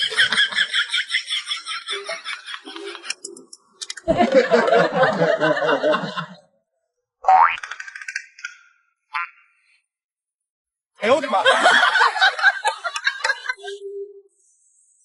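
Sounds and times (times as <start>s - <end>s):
people laughing: 0.0s - 3.4s, 4.0s - 6.5s, 11.0s - 13.8s.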